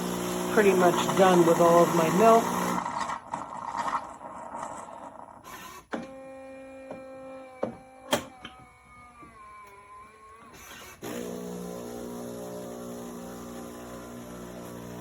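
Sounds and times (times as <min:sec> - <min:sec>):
coffee machine motor whine: 0:00.0 - 0:15.0.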